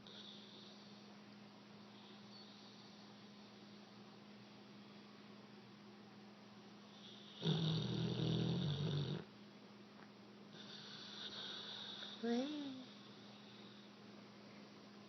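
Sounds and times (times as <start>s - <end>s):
dog snoring: 0.0s - 1.1s, 6.9s - 9.3s, 10.5s - 13.9s.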